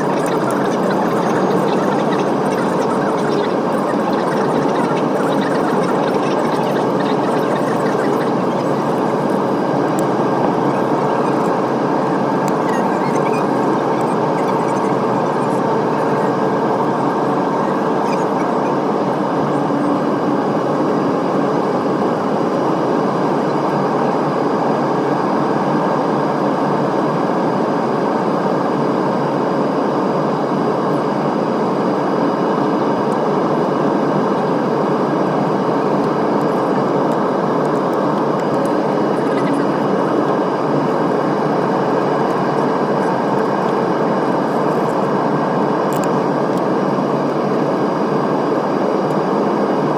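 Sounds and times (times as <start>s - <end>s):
faint steady tones: 0.0s - 26.3s
airliner cabin airflow and engines: 0.0s - 49.9s.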